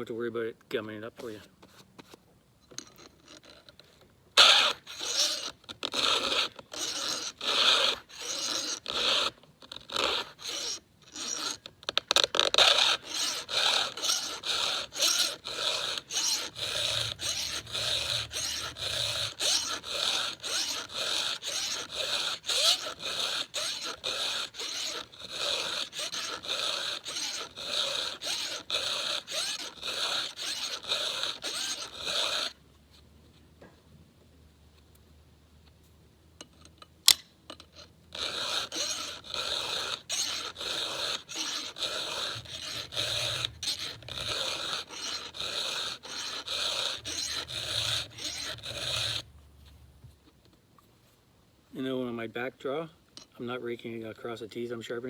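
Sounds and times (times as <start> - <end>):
file rasping on chainsaw chain: 4.4 - 32.6, 37.6 - 49.3.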